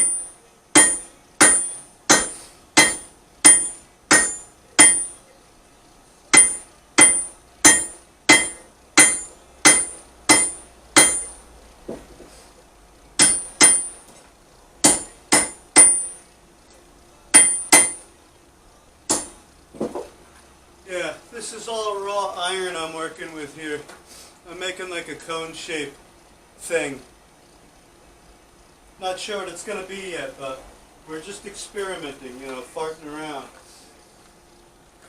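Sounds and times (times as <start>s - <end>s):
hammer ringing on anvil: 0.0s - 5.2s, 6.3s - 11.4s, 13.2s - 14.0s, 14.8s - 16.2s, 17.3s - 18.1s, 19.1s - 19.4s.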